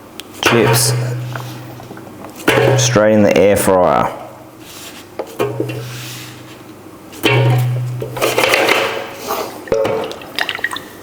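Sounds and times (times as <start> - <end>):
air fryer low hum: 0.0 - 4.7, 5.3 - 9.2.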